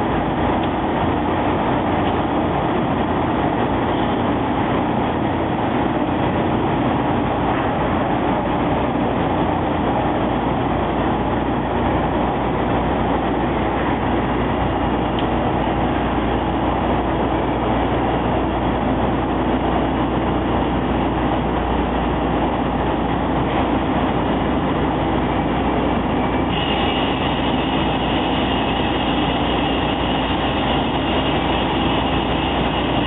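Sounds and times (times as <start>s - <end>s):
drilling machine hum: 0.0s - 33.0s
high hissing whine: 0.0s - 33.0s.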